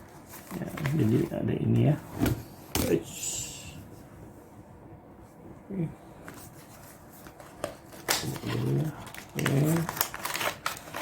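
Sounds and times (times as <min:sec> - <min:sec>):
device and packaging clicks and crinkles: 0:07.3 - 0:11.0.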